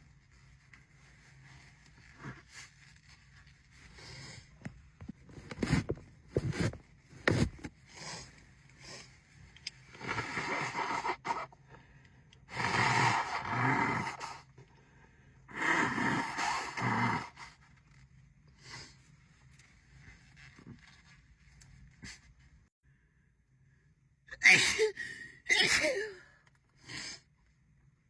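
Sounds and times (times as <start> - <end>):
woman sneezing: 24.4 - 26.3.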